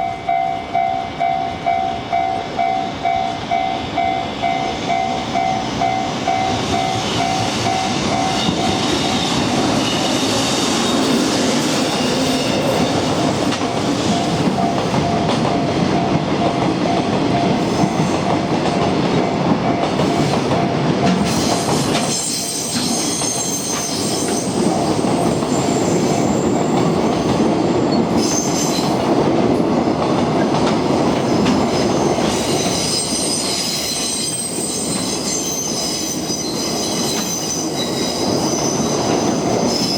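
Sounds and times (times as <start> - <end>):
crossing warning bell dinging: 0.0 - 27.2
train rumbling and clattering: 0.0 - 39.9
high-pitched wheel squeal: 6.8 - 12.9, 21.4 - 24.6, 32.0 - 39.9.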